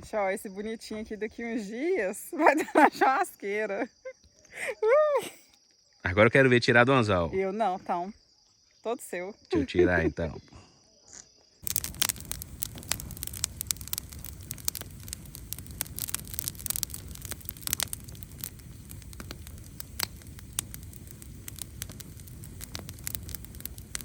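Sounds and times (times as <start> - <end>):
campfire crackling and popping: 11.6 - 24.0
low rumble of flames: 11.6 - 24.0.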